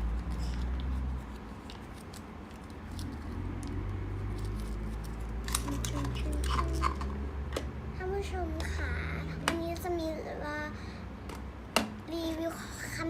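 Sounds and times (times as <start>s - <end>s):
plastic toys and packaging clicking: 0.1s - 7.7s.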